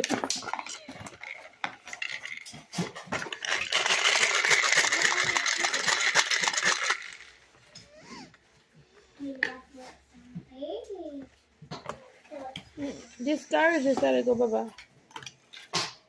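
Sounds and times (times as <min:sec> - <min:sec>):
small hard objects clinking: 0:00.0 - 0:07.5.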